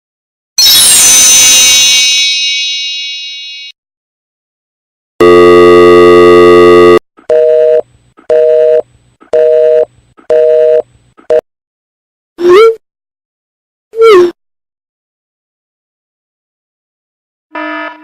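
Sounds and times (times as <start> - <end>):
harsh electric buzzer: 17.5 - 18.0.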